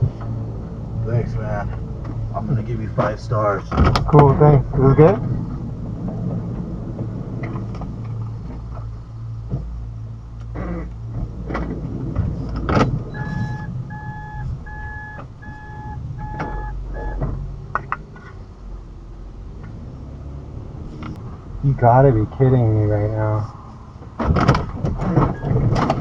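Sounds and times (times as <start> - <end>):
car interior hum: 0.0 - 26.0
car warning chime beeping: 13.1 - 17.2.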